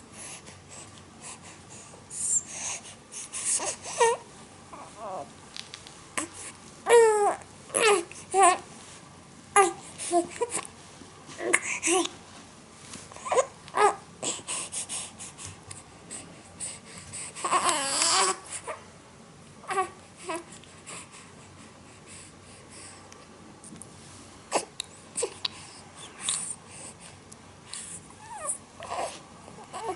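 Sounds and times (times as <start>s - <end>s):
whimpering cries: 3.6s - 5.3s, 6.9s - 8.6s, 13.2s - 14.4s, 28.2s - 29.9s.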